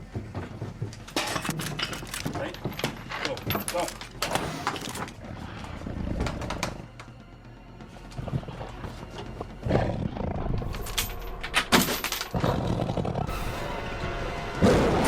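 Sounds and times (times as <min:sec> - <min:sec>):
loud crashes: 0:11.7 - 0:15.0.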